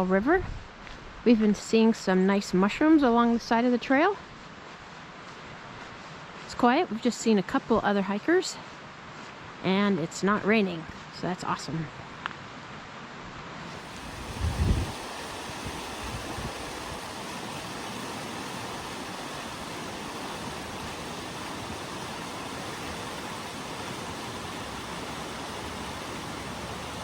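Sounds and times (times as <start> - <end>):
river water rushing: 13.6 - 27.0.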